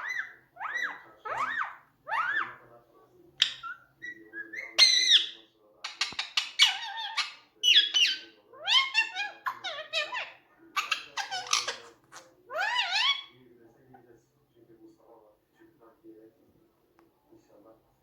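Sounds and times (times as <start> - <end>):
parakeet chattering: 0.0 - 2.6, 3.4 - 13.4.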